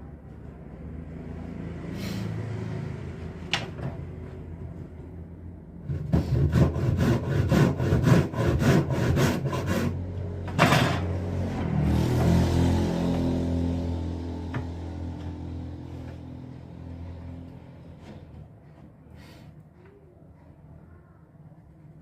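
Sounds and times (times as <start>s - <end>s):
hand saw cutting wood: 5.9s - 10.1s.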